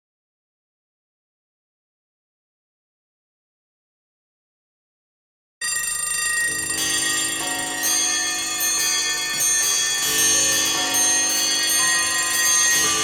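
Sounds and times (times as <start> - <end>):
bell-like chimes ringing: 5.6 - 13.0.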